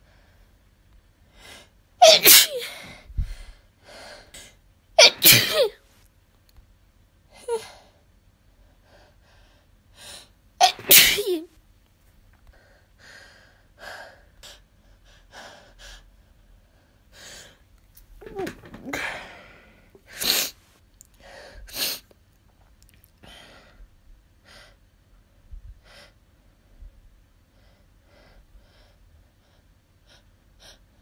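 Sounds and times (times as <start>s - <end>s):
person sneezing: 2.0s - 3.0s, 5.0s - 5.8s, 10.6s - 11.5s, 20.0s - 20.6s
voiced gasp: 18.8s - 20.4s
person sniffing: 18.8s - 20.7s, 21.7s - 22.1s.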